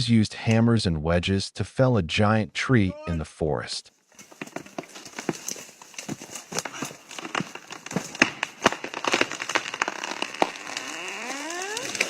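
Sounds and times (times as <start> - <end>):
tree trunk cracking and splintering: 4.2 - 12.0.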